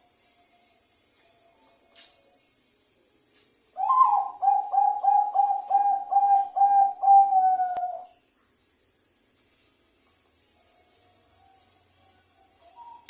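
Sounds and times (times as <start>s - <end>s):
crickets chirping: 0.0s - 13.0s
dove cooing: 3.8s - 8.2s.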